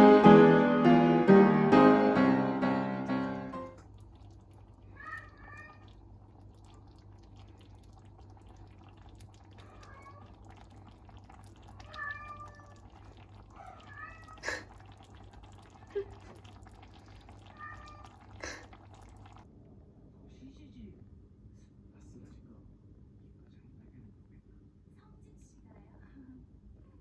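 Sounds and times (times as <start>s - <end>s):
cat meowing faintly: 4.9s - 5.9s, 9.5s - 10.6s, 11.7s - 14.8s, 17.4s - 18.4s.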